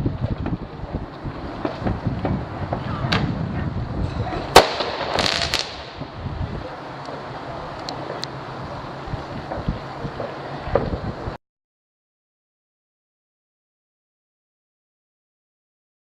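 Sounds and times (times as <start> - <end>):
fireworks bangs and crackling: 0.0 - 11.4
wind rumbling on microphone: 0.0 - 11.4.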